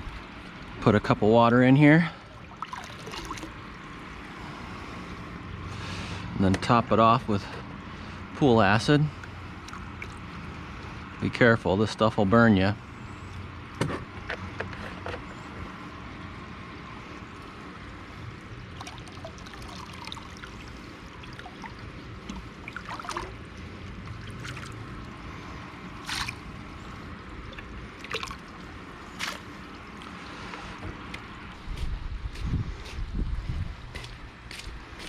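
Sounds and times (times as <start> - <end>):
water trickling: 0.1 - 5.6, 9.1 - 11.2, 15.8 - 31.6.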